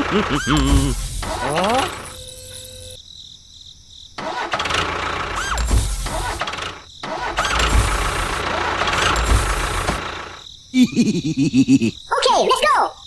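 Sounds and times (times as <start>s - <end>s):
small motor rumbling and squealing: 0.0s - 3.0s, 4.2s - 10.4s.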